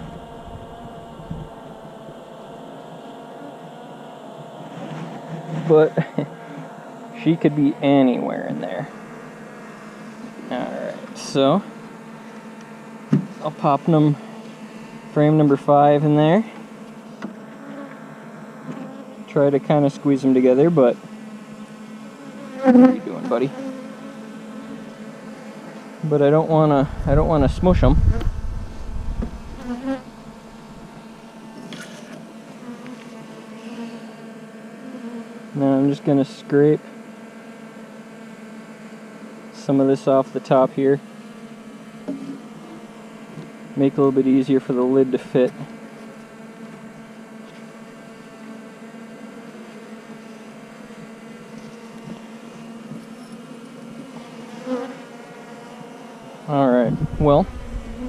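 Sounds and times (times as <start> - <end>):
honeybees buzzing: 0.0 - 58.0
soft knock of hive frame: 13.1 - 13.4, 29.1 - 30.0.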